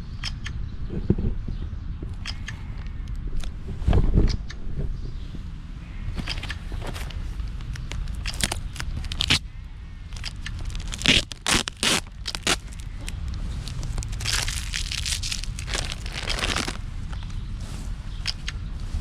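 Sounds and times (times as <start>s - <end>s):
packaging crinkling and rustling: 6.2s - 9.4s, 10.1s - 16.8s
sharp crackles: 6.2s - 9.4s, 10.1s - 17.4s.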